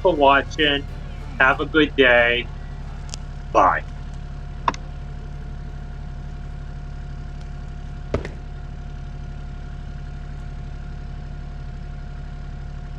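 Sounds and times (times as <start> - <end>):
small digger engine idling: 0.0 - 12.9
loud knock: 8.1 - 8.5.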